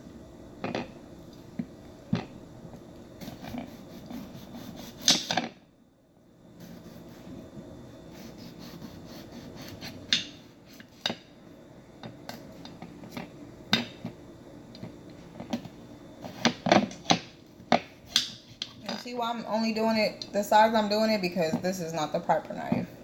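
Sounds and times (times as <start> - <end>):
knife scraping cutting board: 3.2 - 5.5, 6.6 - 7.4, 8.1 - 11.2.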